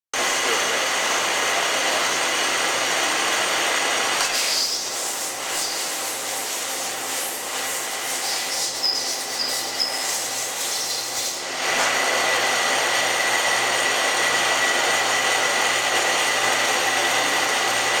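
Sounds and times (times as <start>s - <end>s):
lathe machine running: 0.2s - 18.0s
high-pitched machine tones: 8.3s - 11.1s.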